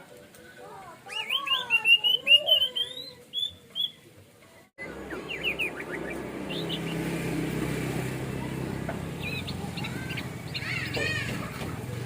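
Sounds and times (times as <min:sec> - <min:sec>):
steady background noise: 0:00.0 - 0:12.0
bird singing whistled phrases: 0:01.1 - 0:04.0, 0:04.8 - 0:07.0.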